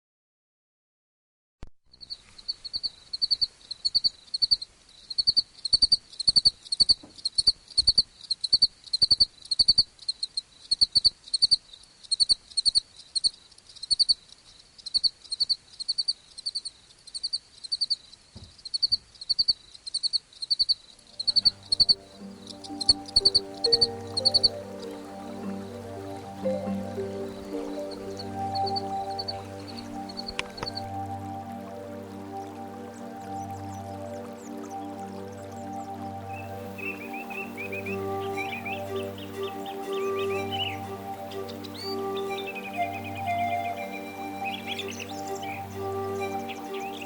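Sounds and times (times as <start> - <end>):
soft background music: 21.0 - 47.0
high trilled chirps: 21.1 - 47.0.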